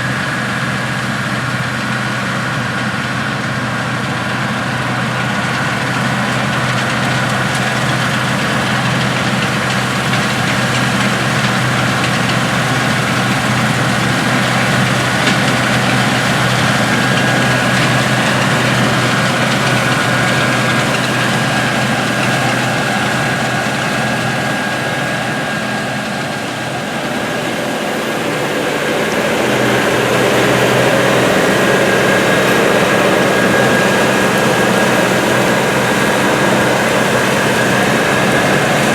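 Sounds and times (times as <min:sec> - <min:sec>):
diesel machinery running: 0:00.0 - 0:38.9.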